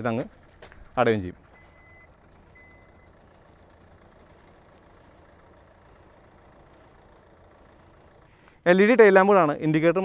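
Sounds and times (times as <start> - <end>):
faint low hum: 0.0 - 9.0
high warning beep: 1.5 - 3.2.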